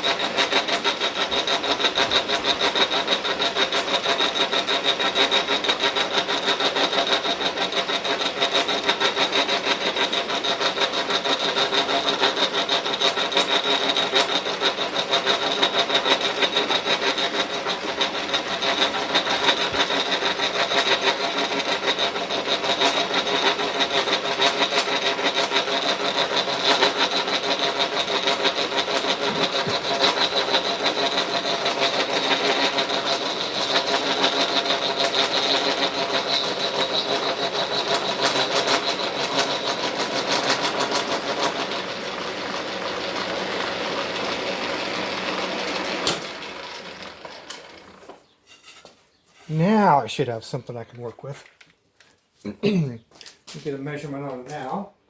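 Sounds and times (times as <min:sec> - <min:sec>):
milling cutter grinding metal: 0:00.0 - 0:48.9.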